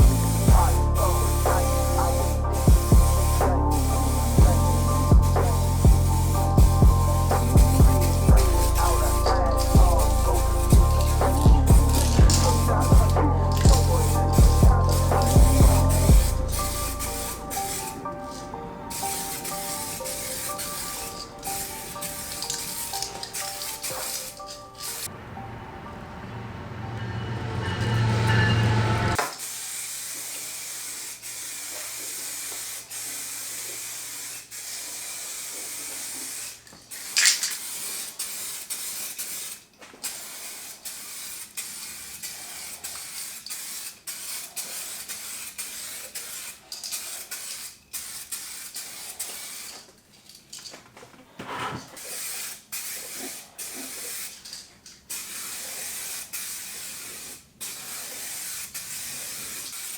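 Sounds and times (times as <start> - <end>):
spray gun hissing: 0.0 - 25.1, 29.1 - 49.9, 52.0 - 59.9
background music: 0.0 - 29.2.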